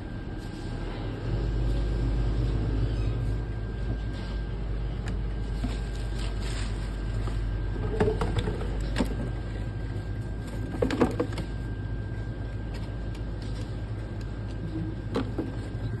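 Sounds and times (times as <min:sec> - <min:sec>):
low background hum: 0:00.0 - 0:16.0
packaging rustling: 0:05.4 - 0:07.5.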